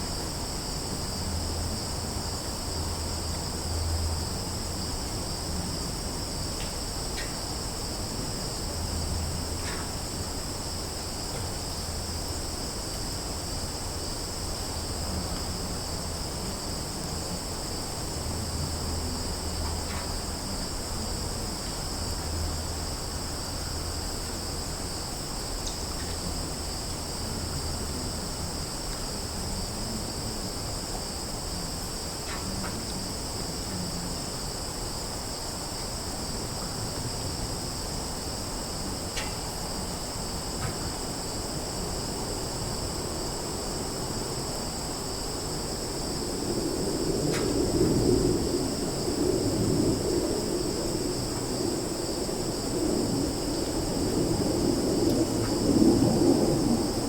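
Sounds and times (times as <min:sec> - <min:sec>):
insects chorus: 0:00.0 - 0:57.0.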